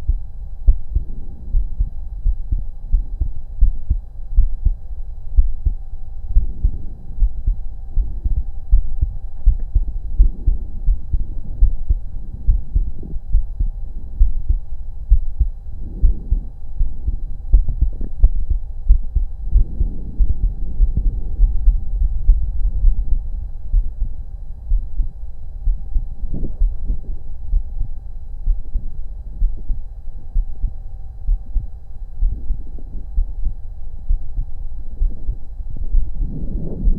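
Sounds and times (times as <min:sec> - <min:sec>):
heartbeat thuds: 0:00.0 - 0:27.9
faint steady hum: 0:00.0 - 0:36.9.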